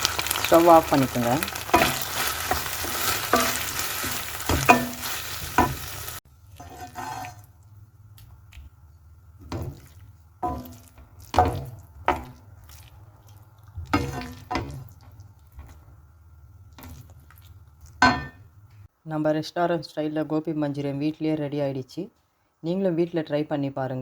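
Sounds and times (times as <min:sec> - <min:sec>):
food sizzling in a pan: 0:00.0 - 0:07.6, 0:09.5 - 0:15.8
spoon scraping a pan: 0:01.6 - 0:05.8, 0:06.5 - 0:07.5, 0:09.4 - 0:12.8, 0:13.9 - 0:15.8.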